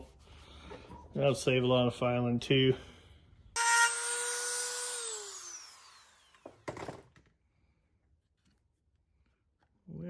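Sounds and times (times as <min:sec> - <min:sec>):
rotary tool whining: 0:03.6 - 0:06.9.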